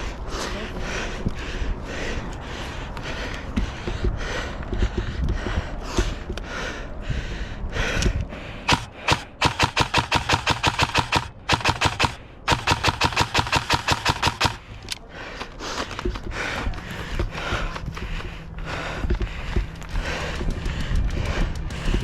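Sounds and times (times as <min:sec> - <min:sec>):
airsoft rifle firing: 0:08.7 - 0:14.7.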